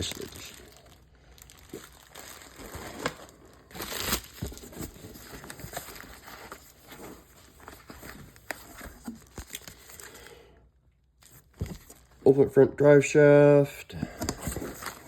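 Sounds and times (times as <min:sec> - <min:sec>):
packaging crinkling and rustling: 0:00.0 - 0:10.3, 0:14.1 - 0:15.0.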